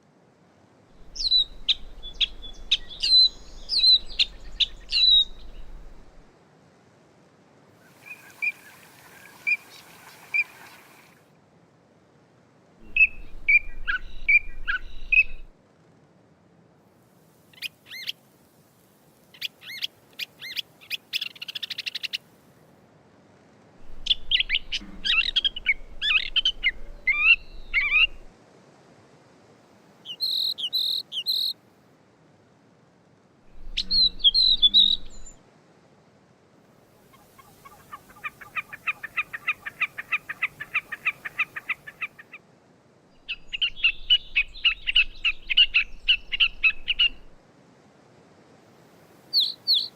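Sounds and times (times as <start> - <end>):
catbird singing: 1.0 - 6.0, 12.8 - 15.5, 23.8 - 28.3, 33.6 - 35.4, 37.3 - 42.3, 43.2 - 47.3, 49.4 - 49.9.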